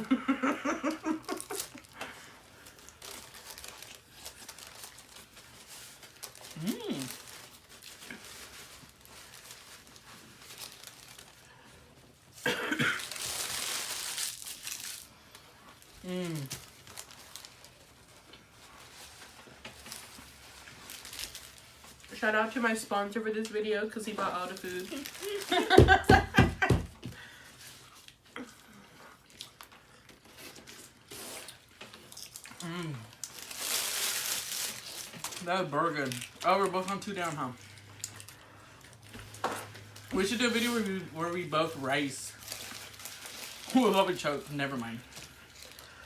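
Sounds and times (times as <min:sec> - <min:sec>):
wrapper rustling: 0:00.6 - 0:46.0
loud cough: 0:12.4 - 0:13.1
faint chewing: 0:27.6 - 0:33.4.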